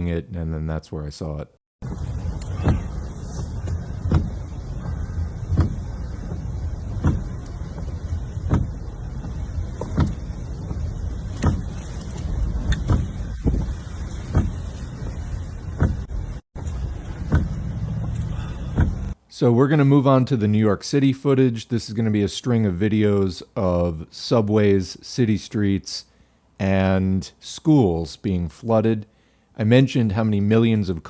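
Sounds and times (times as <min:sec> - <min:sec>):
low rumble: 0:01.8 - 0:19.2
sharp knocks: 0:04.0 - 0:10.8.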